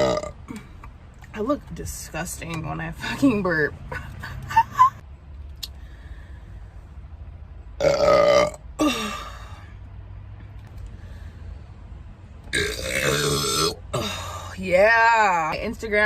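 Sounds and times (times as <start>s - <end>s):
woman burping: 0.0s - 0.8s, 7.8s - 9.4s, 12.6s - 14.5s.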